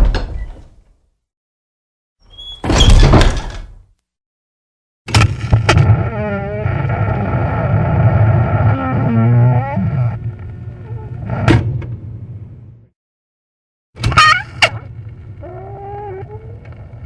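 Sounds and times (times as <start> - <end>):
door hinges creaking: 2.3 - 3.8, 8.4 - 10.2.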